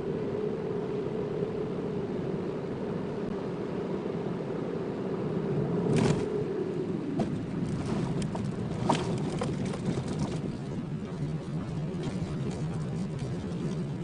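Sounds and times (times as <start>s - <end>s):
car engine and road noise hum: 0.0s - 14.0s
knocks and rattles: 7.2s - 13.8s.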